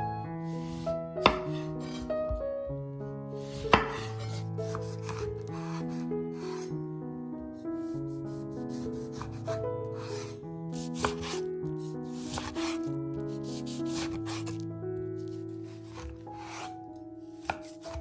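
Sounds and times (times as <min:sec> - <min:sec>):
slow background music: 0:00.0 - 0:18.0
food being grated: 0:12.2 - 0:12.8, 0:13.7 - 0:14.6.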